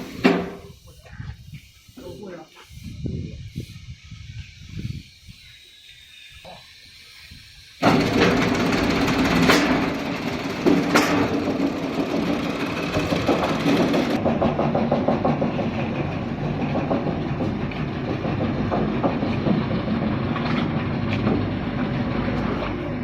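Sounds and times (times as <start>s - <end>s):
roll-forming machine running: 7.8s - 23.0s.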